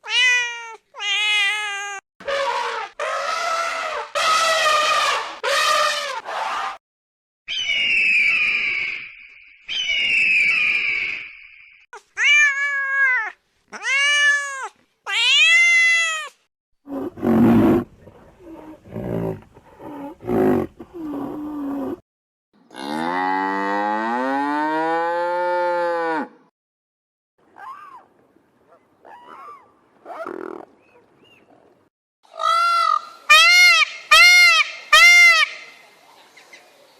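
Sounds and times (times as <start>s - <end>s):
high animal calls: 16.9s - 22.0s
long low animal call: 16.9s - 22.0s.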